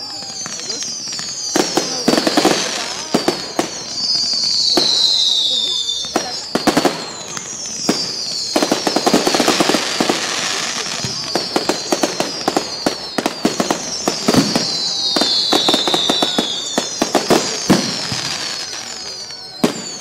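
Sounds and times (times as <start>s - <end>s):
firework cracks and bangs: 0.0s - 20.0s
whistling rockets: 0.0s - 20.0s.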